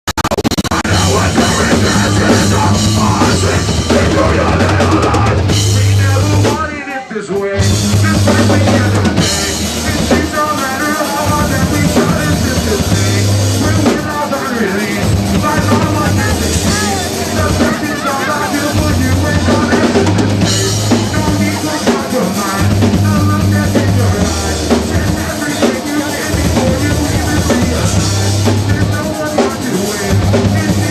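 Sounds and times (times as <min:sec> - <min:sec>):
drum kit kick and snare: 0:00.1 - 0:06.6, 0:15.0 - 0:30.9
rock band playing: 0:00.1 - 0:30.9.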